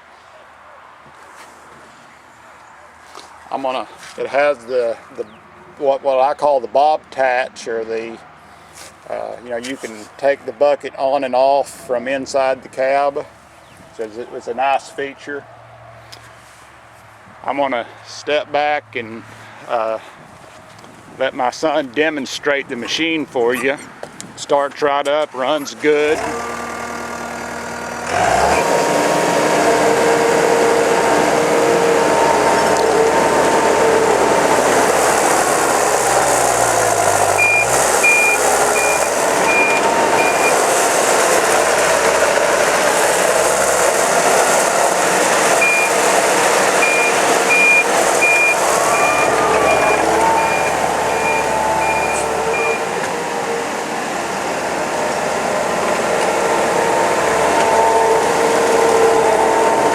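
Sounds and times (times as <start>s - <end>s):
diesel engine running: 25.9s - 59.9s
backup alarm beeping: 37.4s - 40.6s, 45.6s - 46.0s, 46.8s - 52.9s.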